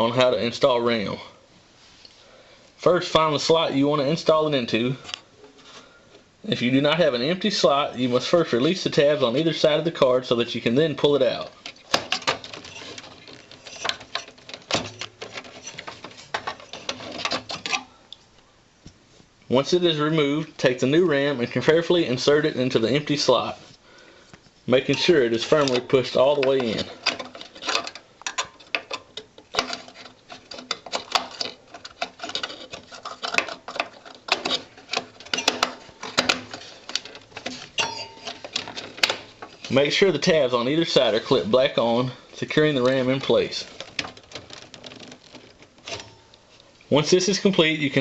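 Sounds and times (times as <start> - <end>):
plastic clicks and rattles: 11.6 - 17.9, 25.0 - 39.8, 42.8 - 46.7.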